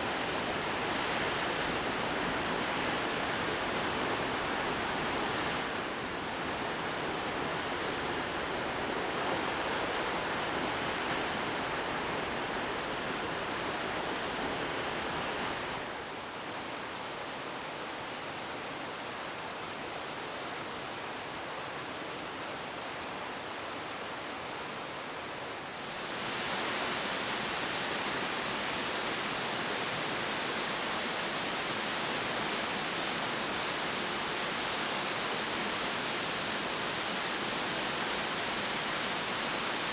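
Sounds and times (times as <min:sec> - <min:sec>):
waterfall rushing: 0:25.8 - 0:39.9.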